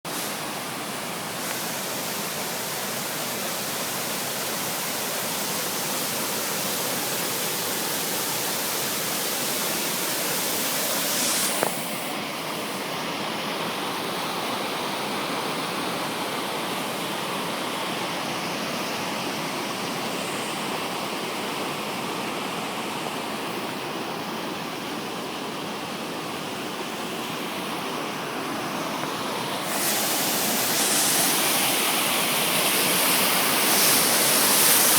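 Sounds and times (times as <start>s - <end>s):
waterfall rushing: 0.1s - 12.9s, 25.8s - 34.9s.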